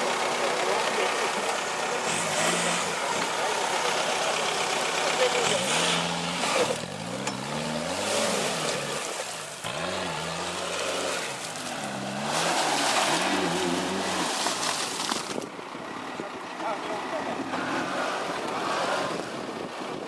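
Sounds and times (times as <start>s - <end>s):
engine revving: 0.0s - 19.7s.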